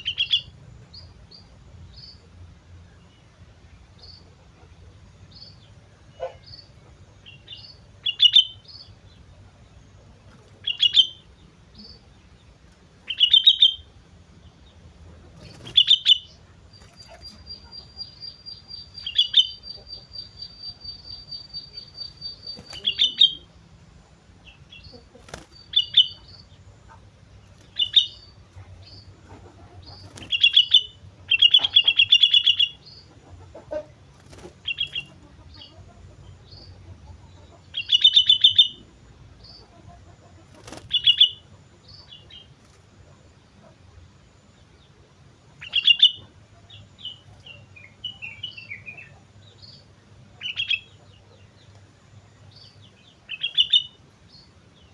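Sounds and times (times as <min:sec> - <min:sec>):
high bird trill: 0:13.0 - 0:14.0, 0:15.4 - 0:23.5, 0:24.5 - 0:35.9, 0:53.3 - 0:54.0.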